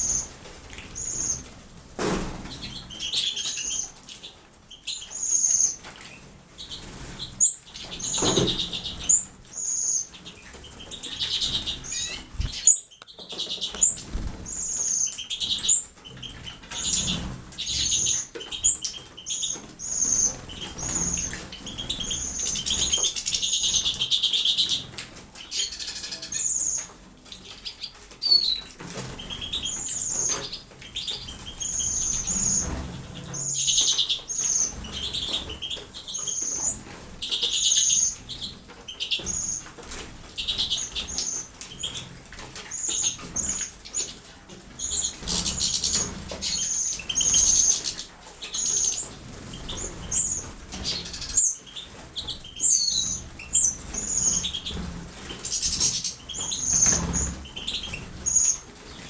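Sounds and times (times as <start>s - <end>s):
small birds chirping: 0.0s - 1.5s, 2.4s - 59.0s
wings flapping in water: 13.6s - 26.1s.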